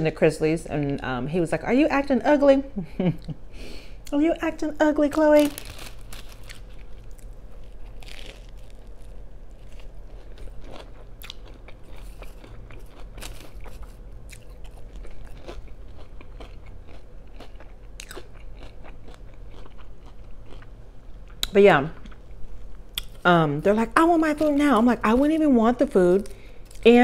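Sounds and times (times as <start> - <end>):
person chewing crunchy food: 5.5 - 23.2, 26.2 - 26.9.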